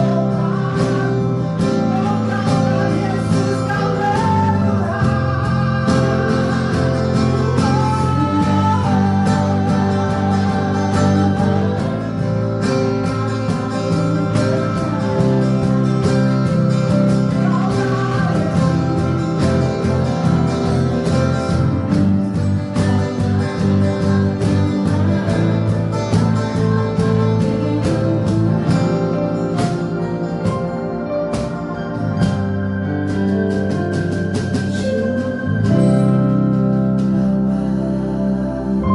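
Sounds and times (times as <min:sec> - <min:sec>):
people singing: 0:00.0 - 0:30.1
worship band music with guitar: 0:00.0 - 0:38.9.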